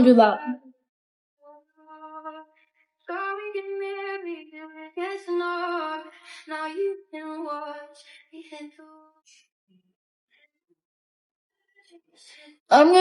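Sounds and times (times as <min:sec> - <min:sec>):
woman singing: 0:01.5 - 0:09.4.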